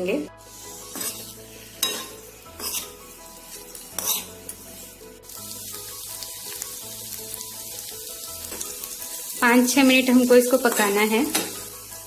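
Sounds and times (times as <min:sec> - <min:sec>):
food sizzling: 0:00.0 - 0:12.0
spoon scraping a frying pan: 0:00.5 - 0:04.9.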